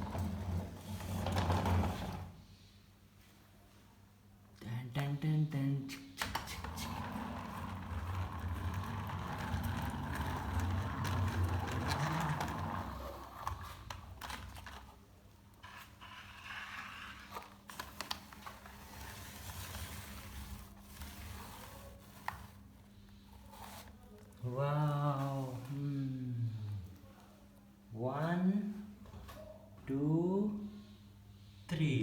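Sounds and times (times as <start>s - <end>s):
toy cars rolling: 6.4s - 15.0s.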